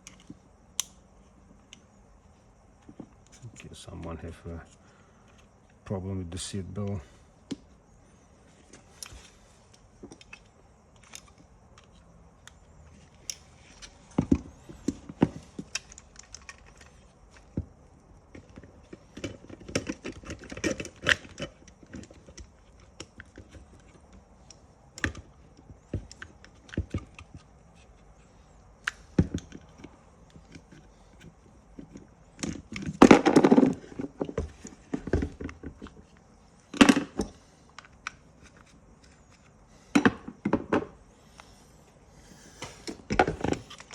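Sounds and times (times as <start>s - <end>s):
plastic parts clicking and knocking: 8.7s - 41.0s, 42.6s - 43.9s.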